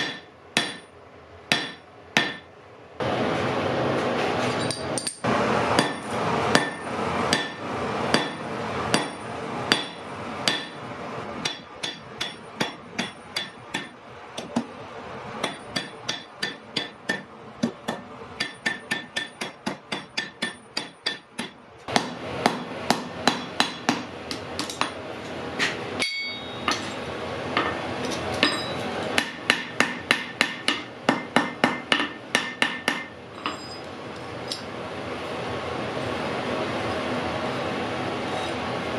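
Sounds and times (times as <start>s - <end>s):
hammer striking iron on anvil: 0.0s - 2.5s, 4.6s - 10.8s, 11.4s - 14.7s, 15.4s - 25.0s, 25.6s - 33.8s.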